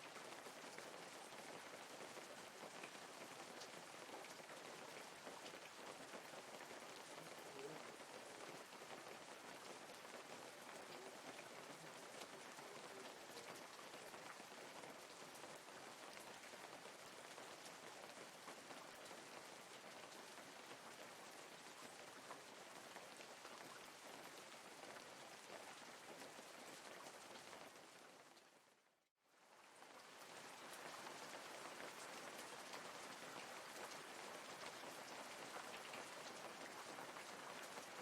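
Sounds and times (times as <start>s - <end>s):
light rain falling: 0.0s - 38.0s.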